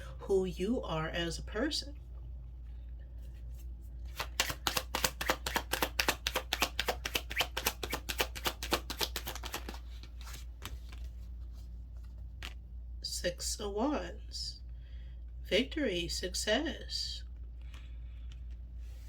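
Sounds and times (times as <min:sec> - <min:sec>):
cards being shuffled: 0:03.3 - 0:12.6.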